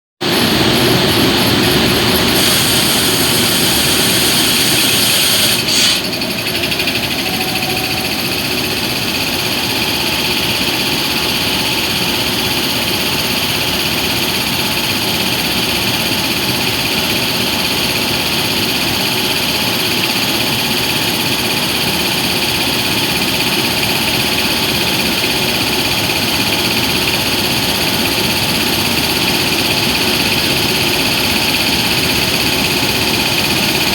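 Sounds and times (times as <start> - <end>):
electric locomotive humming: 0.2 - 33.9
whining cooling blowers: 0.2 - 33.9.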